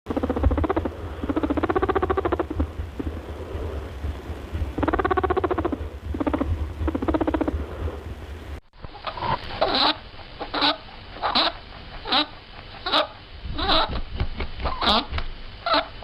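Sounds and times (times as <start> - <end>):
rabbit grunting: 0.1 - 7.6
steady low hum: 0.1 - 16.0.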